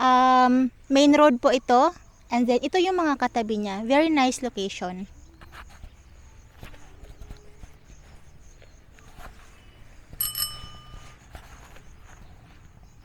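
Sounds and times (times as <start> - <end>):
faint footsteps on ground: 4.2 - 13.0
short bell-like ring: 10.2 - 11.3.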